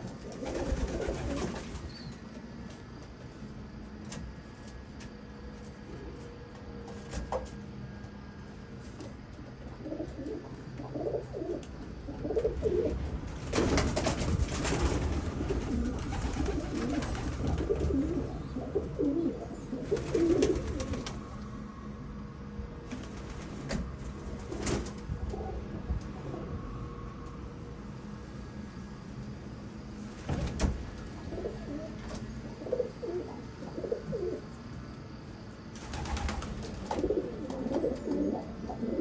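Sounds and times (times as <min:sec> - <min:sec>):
pigeons cooing: 0:00.0 - 0:02.2, 0:09.6 - 0:21.4, 0:31.2 - 0:34.6, 0:35.8 - 0:39.0.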